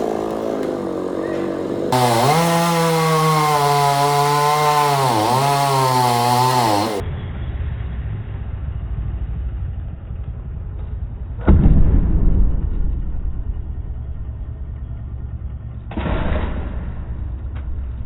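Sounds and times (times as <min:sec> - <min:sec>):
chainsaw running at high revs: 0:00.0 - 0:07.0
low rumbling noise: 0:07.1 - 0:18.0
heavy thud: 0:11.4 - 0:13.8.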